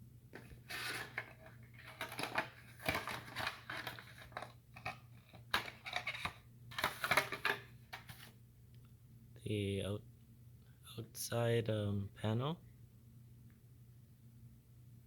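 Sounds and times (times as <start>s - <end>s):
faint low hum: 0.0s - 15.0s
packaging rustling: 0.4s - 8.3s.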